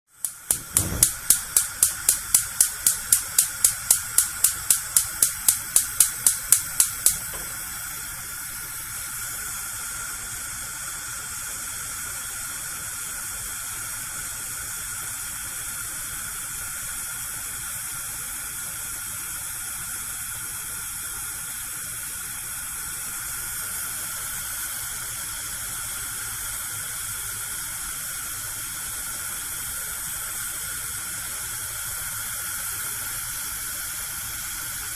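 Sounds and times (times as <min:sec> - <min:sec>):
gas flame hissing: 0:00.1 - 0:18.5, 0:20.4 - 0:34.9
spark igniter clicking: 0:00.2 - 0:07.7.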